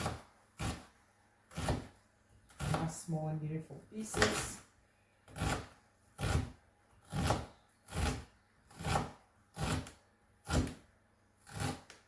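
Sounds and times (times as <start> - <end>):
knife chopping onion on board: 0.0 - 0.9, 1.5 - 1.9, 2.5 - 3.0, 4.0 - 4.6, 5.3 - 12.0.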